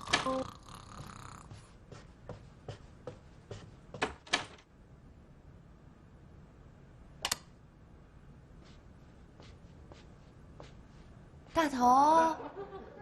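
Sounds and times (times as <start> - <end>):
footsteps on hard floor: 1.0 - 4.2, 8.6 - 11.7.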